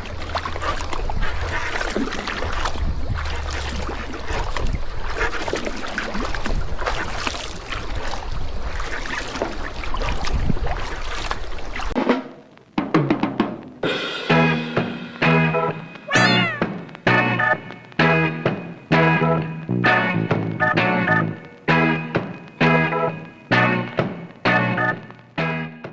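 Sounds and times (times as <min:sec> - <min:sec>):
wind buffeting microphone: 0:00.0 - 0:11.9
water splashing around paddle: 0:00.0 - 0:12.0.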